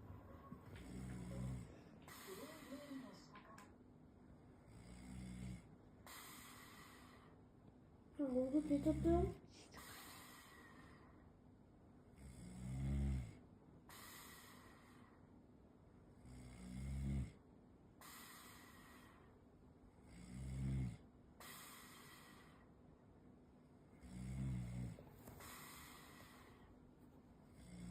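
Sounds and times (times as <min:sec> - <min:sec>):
person snoring: 0:00.8 - 0:02.9, 0:12.2 - 0:13.4, 0:16.2 - 0:17.4, 0:20.0 - 0:21.0, 0:24.0 - 0:26.6, 0:27.6 - 0:27.9
breathy hiss: 0:00.8 - 0:03.3, 0:06.0 - 0:07.4, 0:08.8 - 0:11.3, 0:13.9 - 0:15.3, 0:18.0 - 0:19.3, 0:21.4 - 0:22.7, 0:25.1 - 0:26.8.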